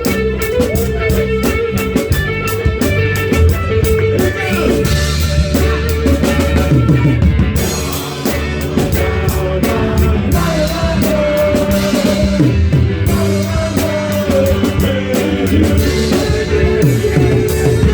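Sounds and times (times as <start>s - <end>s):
drum kit beat: 0.0s - 17.9s
live rock band playing: 0.0s - 17.9s
person singing long notes: 4.1s - 17.9s.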